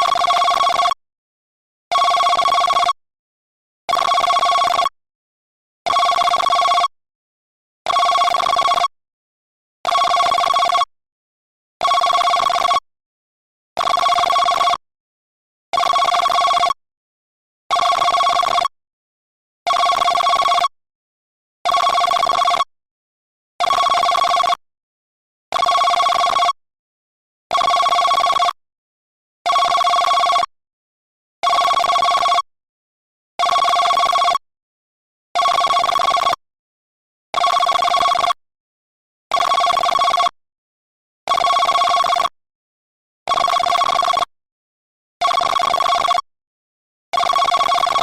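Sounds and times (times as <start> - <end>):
phone ringtone: 0.1 - 1.0, 3.9 - 4.9, 5.9 - 6.9, 7.9 - 8.9, 9.9 - 10.9, 13.8 - 14.8, 17.7 - 18.7, 19.7 - 20.7, 25.6 - 26.6, 27.6 - 28.6, 29.5 - 30.5, 31.5 - 32.5, 33.5 - 34.4, 35.4 - 36.4, 37.4 - 38.4, 39.3 - 40.3, 41.3 - 42.3, 43.3 - 44.3, 45.2 - 46.2, 47.2 - 48.0.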